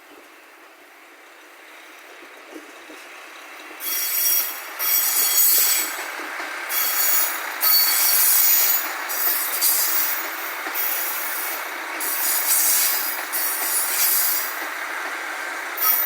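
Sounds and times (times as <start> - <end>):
train passing: 0.3 - 16.0
train wheels squealing: 3.8 - 6.1, 6.7 - 14.7, 15.7 - 16.0.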